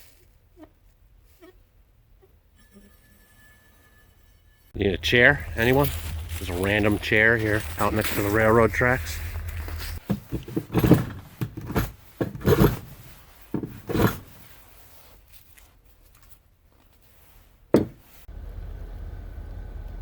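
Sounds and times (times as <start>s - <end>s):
thumps and knocks: 9.4s - 14.3s, 17.8s - 18.1s.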